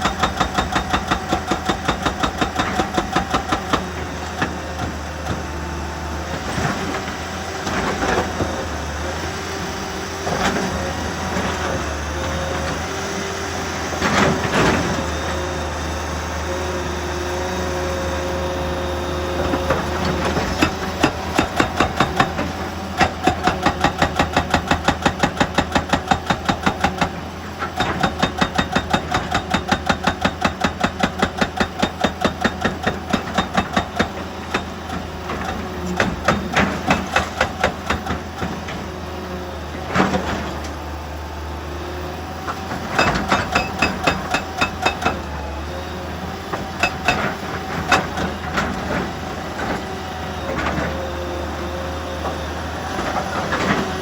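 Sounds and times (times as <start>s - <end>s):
hydraulic breaker hammering rock: 0.0s - 8.6s, 19.4s - 39.1s, 42.5s - 49.9s.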